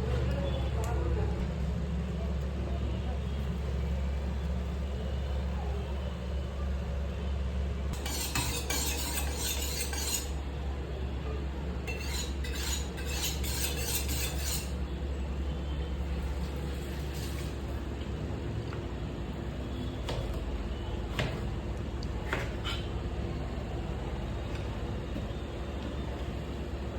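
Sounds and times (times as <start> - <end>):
metal utensil scraping pan: 8.0 - 10.4, 11.9 - 14.8.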